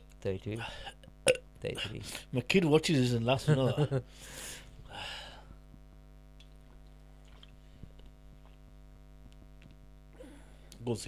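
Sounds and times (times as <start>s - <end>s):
steady electrical hum: 0.0s - 11.0s.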